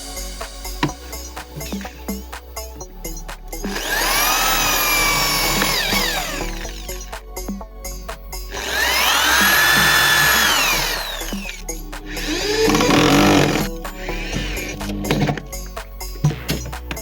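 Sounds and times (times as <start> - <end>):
background music: 0.0 - 17.0
power tool motor whine: 3.6 - 6.8, 8.6 - 11.6, 12.3 - 13.7.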